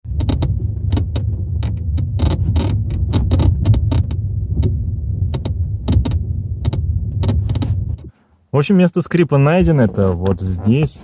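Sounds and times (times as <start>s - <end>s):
low road noise rumble: 0.0s - 11.0s
parcel shelf creaking: 0.1s - 8.1s.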